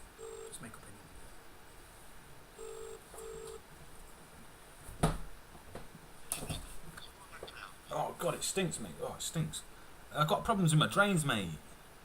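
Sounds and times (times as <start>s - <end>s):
telephone ringback tone: 0.2s - 0.6s, 2.6s - 3.6s.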